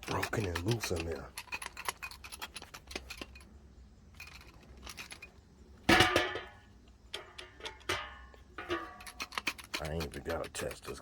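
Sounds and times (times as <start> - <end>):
loud metallic clank: 5.8 - 9.3.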